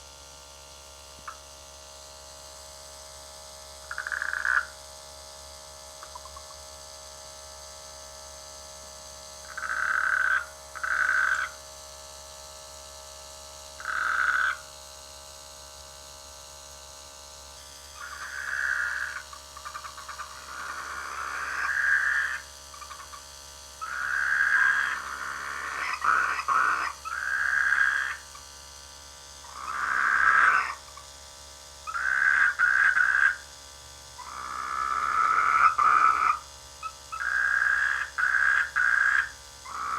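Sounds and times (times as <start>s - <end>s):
faint steady hum: 0.0s - 39.9s
frogs croaking: 1.2s - 1.5s, 3.8s - 4.8s, 6.0s - 6.7s, 9.4s - 11.6s, 13.8s - 14.7s, 18.0s - 28.5s, 29.4s - 31.1s, 31.8s - 33.5s, 34.2s - 39.9s.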